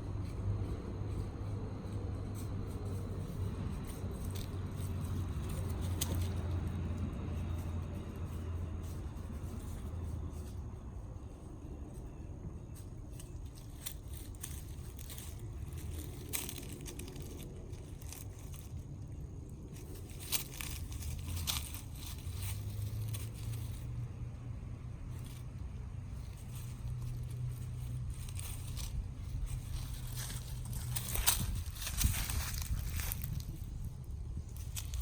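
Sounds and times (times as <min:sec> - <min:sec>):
steady low rumble: 0:00.0 - 0:35.0
puppy gnawing gourd: 0:00.1 - 0:10.4, 0:13.0 - 0:24.0.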